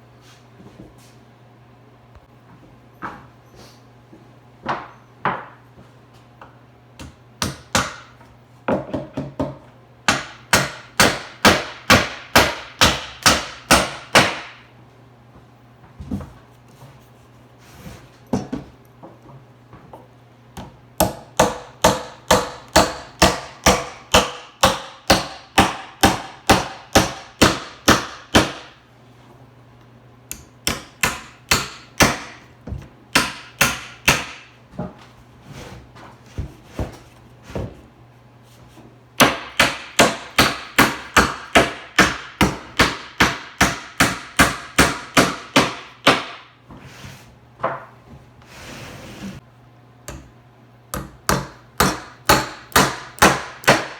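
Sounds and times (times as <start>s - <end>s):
hammer driving nails into wood: 10.1s - 14.6s, 21.0s - 28.7s, 33.1s - 34.5s, 39.2s - 46.4s, 51.0s - 53.9s.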